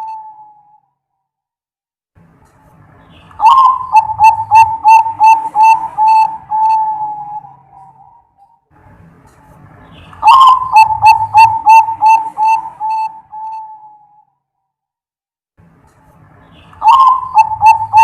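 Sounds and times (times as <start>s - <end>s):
dove cooing: 0.0s - 0.7s, 3.4s - 8.3s, 10.2s - 14.2s, 16.8s - 18.0s.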